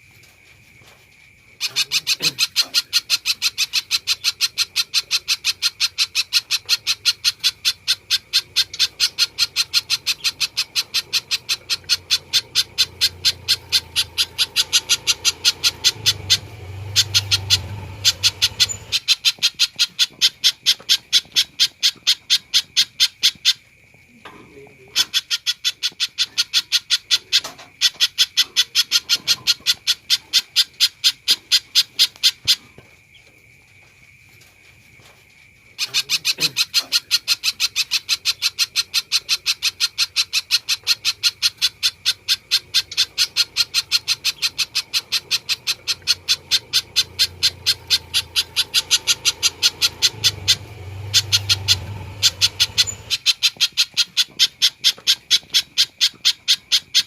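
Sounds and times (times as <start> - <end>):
bird calling high chipping notes: 4.8 - 22.8, 37.5 - 55.6.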